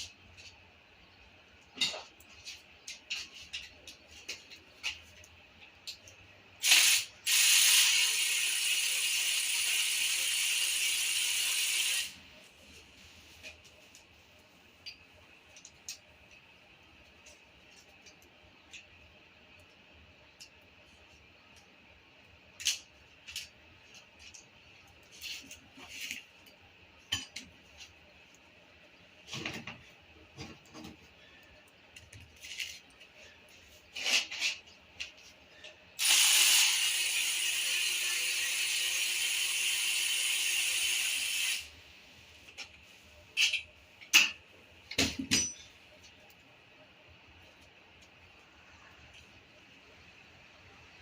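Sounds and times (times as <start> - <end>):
power tool running with hiss: 6.6 - 12.2, 36.0 - 41.7.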